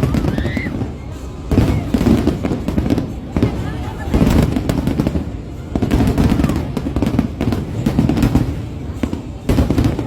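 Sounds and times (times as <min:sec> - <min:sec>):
fireworks booming: 0:00.0 - 0:10.0
fireworks crackling: 0:00.0 - 0:10.0.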